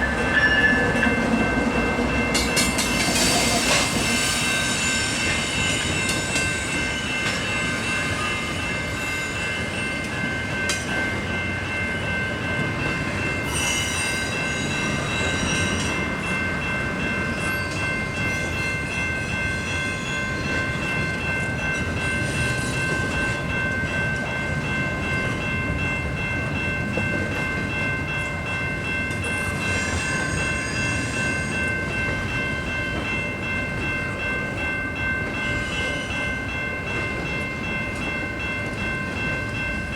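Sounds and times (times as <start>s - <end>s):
shrill rising tone: 0.0s - 1.3s
freight train rumbling past: 0.0s - 39.9s.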